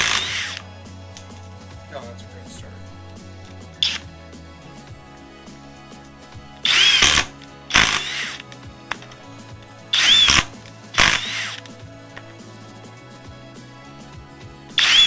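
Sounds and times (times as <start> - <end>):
impact driver whirring: 0.0 - 0.7, 3.8 - 4.1, 6.6 - 9.1, 9.9 - 11.8, 14.8 - 15.0.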